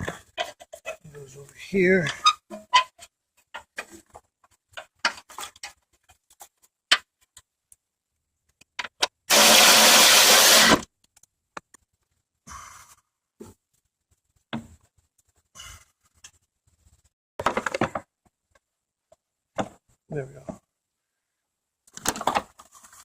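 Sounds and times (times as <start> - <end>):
power tool driving bolt: 9.3 - 10.8.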